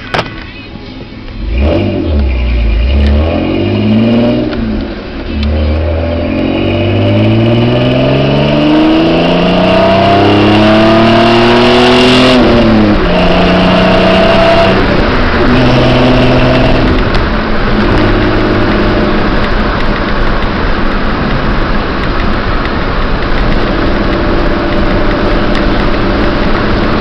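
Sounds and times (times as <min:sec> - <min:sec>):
engine exhaust accelerating: 0:01.3 - 0:27.0.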